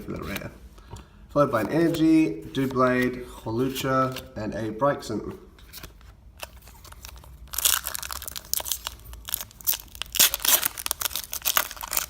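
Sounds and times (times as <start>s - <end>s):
foil wrapper tearing and crinkling: 6.4s - 12.0s.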